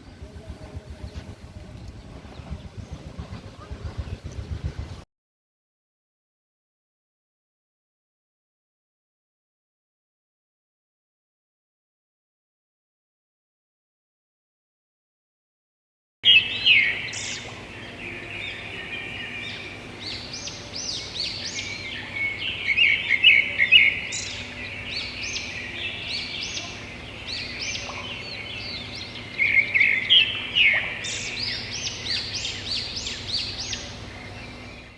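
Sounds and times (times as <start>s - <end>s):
birds chirping and singing: 0.0s - 5.0s, 16.3s - 34.9s.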